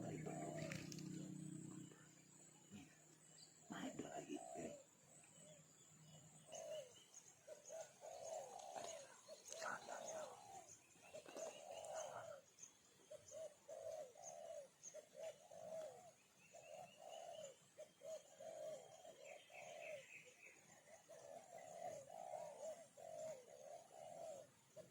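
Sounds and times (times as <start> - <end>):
thin high-pitched hum: 0.0 - 4.0
dove cooing: 0.0 - 24.9.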